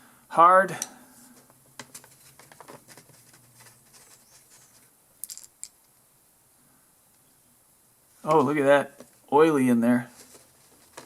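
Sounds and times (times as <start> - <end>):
small parts clicking and scraping: 0.8 - 5.9.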